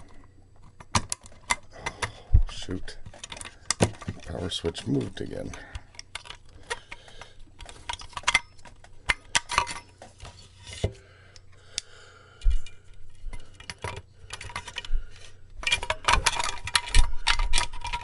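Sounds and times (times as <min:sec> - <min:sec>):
clicks and clinks of metal case: 0:07.6 - 0:10.0.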